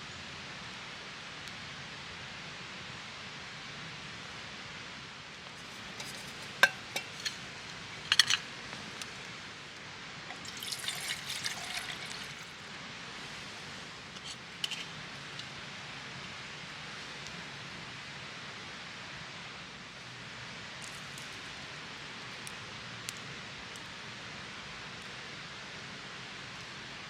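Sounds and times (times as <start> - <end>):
faint steady hiss: 0.0 - 27.0
liquid being poured: 10.3 - 12.6.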